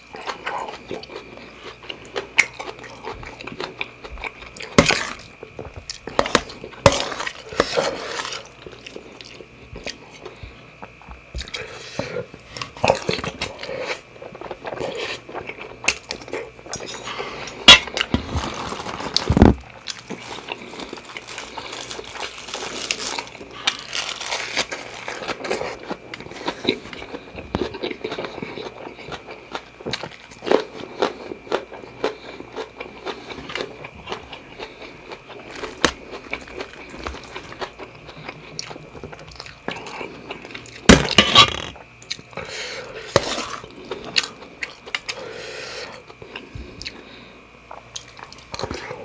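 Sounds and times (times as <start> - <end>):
chewing with wet mouth sounds: 24.8 - 40.9, 47.7 - 49.0.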